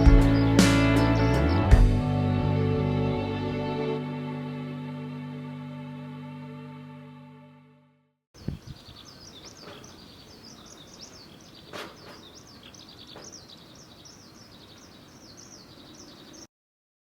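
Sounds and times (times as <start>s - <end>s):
small birds chirping: 0.0s - 1.8s, 8.4s - 16.5s.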